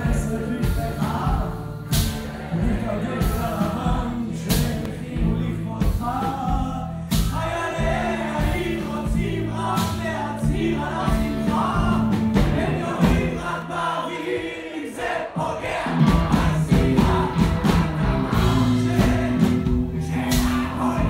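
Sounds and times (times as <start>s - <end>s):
drum hits: 0.0s - 13.6s, 15.4s - 21.0s
bass guitar: 0.0s - 13.9s, 15.7s - 21.0s
rock band playing: 0.0s - 14.0s, 15.4s - 21.0s
person singing: 0.0s - 14.3s.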